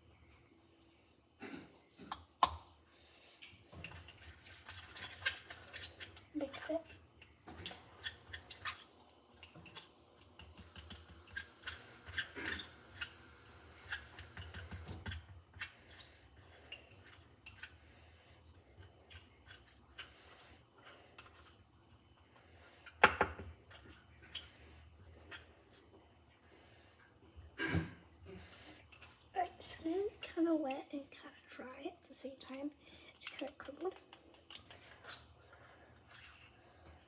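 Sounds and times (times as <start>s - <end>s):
plastic spoon scraping a bowl: 3.8s - 7.0s.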